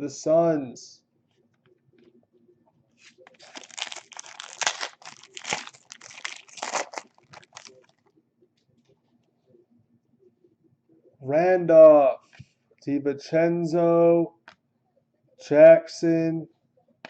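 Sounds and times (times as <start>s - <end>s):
plastic wrapper crinkling and tearing: 3.0s - 8.0s.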